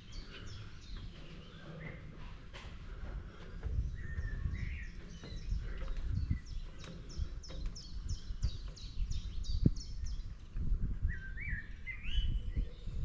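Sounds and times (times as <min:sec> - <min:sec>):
songbirds singing: 0:00.0 - 0:13.0.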